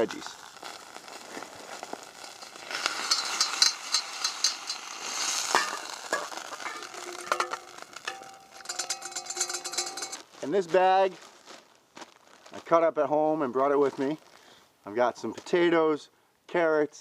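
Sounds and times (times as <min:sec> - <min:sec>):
meat sizzling in hot oil: 0:00.0 - 0:08.7
utensil scraping metal pot: 0:02.2 - 0:10.3.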